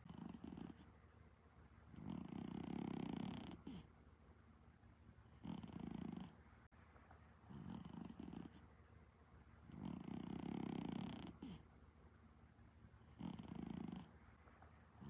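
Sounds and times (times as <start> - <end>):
cat snoring: 0.0 - 0.9, 1.9 - 3.9, 5.4 - 6.4, 7.5 - 8.7, 9.7 - 11.7, 13.1 - 14.1.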